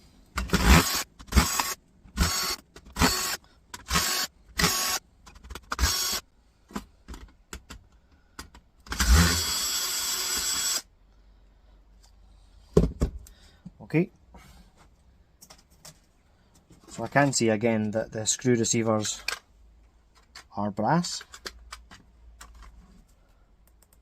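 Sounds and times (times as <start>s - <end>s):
electric drill driver running: 0.4s - 5.0s, 5.7s - 6.2s, 8.9s - 10.8s.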